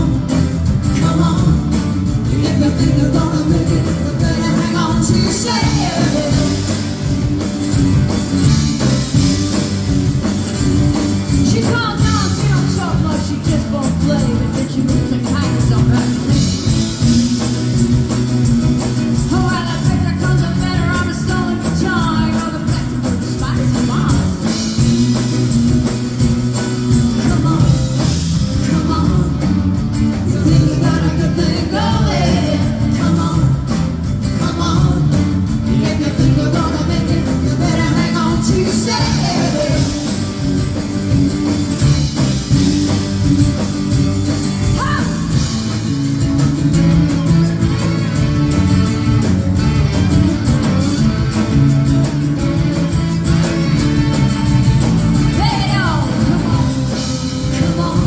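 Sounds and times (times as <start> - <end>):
person singing: 0.0 - 7.0, 11.4 - 17.8, 19.2 - 24.5, 27.0 - 40.3, 44.7 - 45.8, 55.2 - 58.0
bass: 0.0 - 58.0
drum beat: 0.0 - 58.0
guitar: 0.0 - 58.0
keyboards: 0.0 - 58.0.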